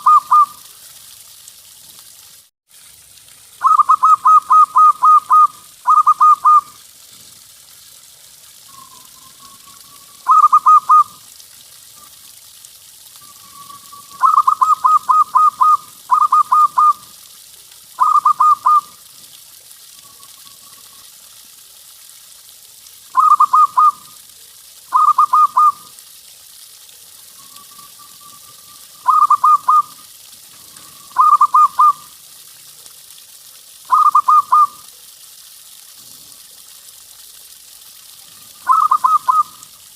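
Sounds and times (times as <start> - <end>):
dove cooing: 3.6 - 6.7, 10.2 - 11.1, 13.5 - 17.0, 18.0 - 18.9, 23.2 - 24.0, 24.9 - 25.8, 27.8 - 30.0, 30.7 - 32.0, 33.9 - 34.8, 38.6 - 39.6.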